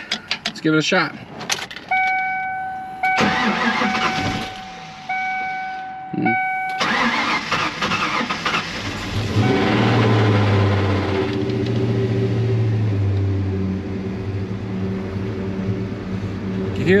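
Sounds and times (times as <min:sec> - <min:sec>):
car engine starting and idling: 0:01.4 - 0:17.0
dashboard warning chime: 0:01.9 - 0:07.2.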